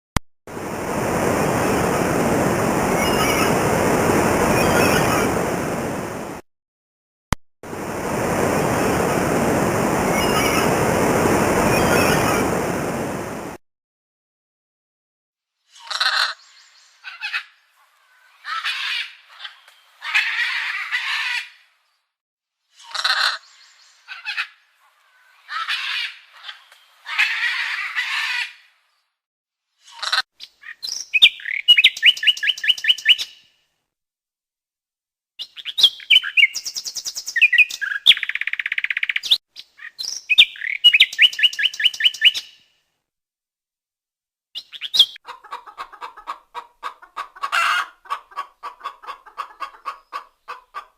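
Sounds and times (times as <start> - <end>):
harsh bird calls: 29.9 - 33.3, 35.4 - 42.5
bird trills: 30.0 - 33.3, 35.4 - 42.5.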